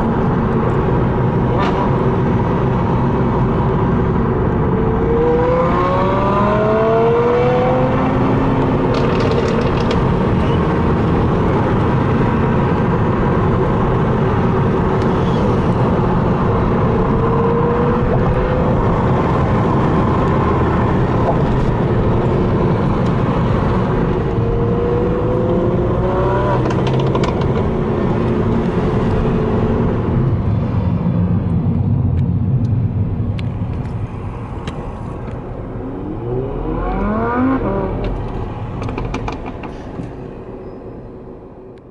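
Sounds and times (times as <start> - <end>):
sports car engine accelerating: 0.1 - 39.2
exhaust pops and crackles: 8.9 - 10.4, 26.6 - 27.7.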